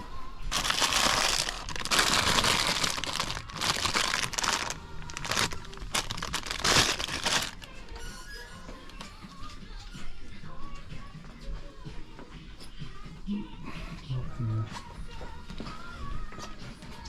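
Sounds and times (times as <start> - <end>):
crinkly material rustling: 0.5 - 9.0.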